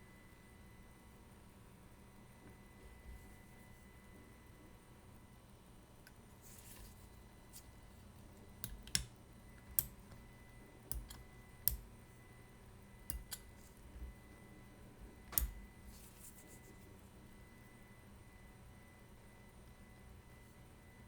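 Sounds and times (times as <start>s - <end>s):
small tools clicking on watch parts: 8.6s - 10.0s, 10.9s - 11.8s, 13.1s - 13.6s.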